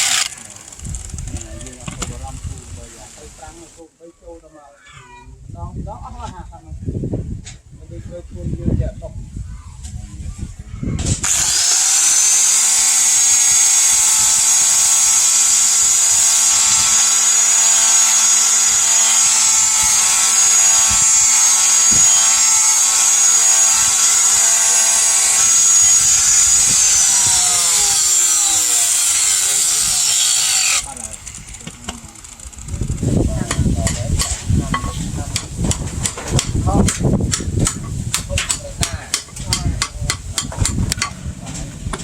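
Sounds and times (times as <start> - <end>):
electric grinder whining: 0.0 - 1.9, 11.1 - 33.0.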